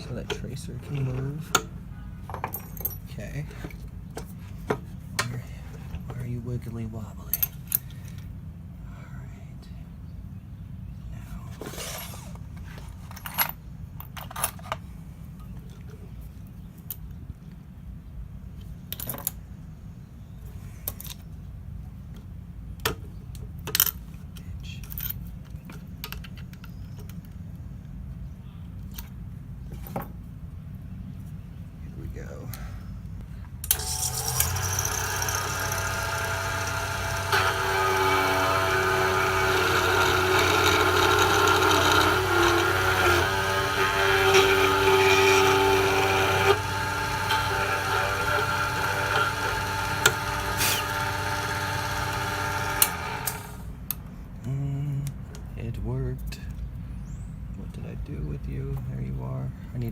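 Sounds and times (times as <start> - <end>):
steady low hum: 0.0 - 59.9
key-cutting machine milling: 33.7 - 53.6.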